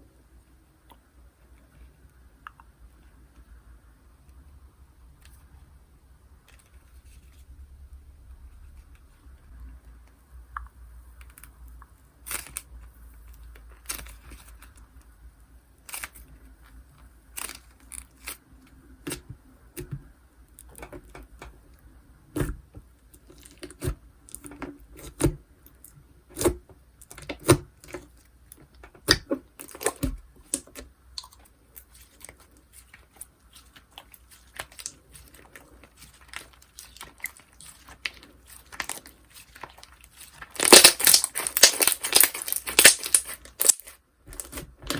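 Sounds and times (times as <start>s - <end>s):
slime squeezed by hand: 31.2s - 44.6s.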